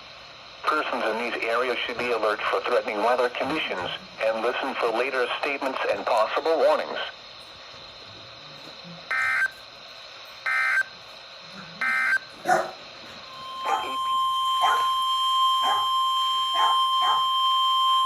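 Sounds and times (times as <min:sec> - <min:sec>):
piercing single-tone alarm: 0:09.1 - 0:09.6, 0:10.4 - 0:11.0, 0:11.8 - 0:12.6, 0:13.2 - 0:18.0
dog barking: 0:12.4 - 0:12.8, 0:13.6 - 0:14.0, 0:14.6 - 0:15.0, 0:15.6 - 0:15.9, 0:16.5 - 0:17.3
raspy digital data bursts: 0:13.5 - 0:17.3.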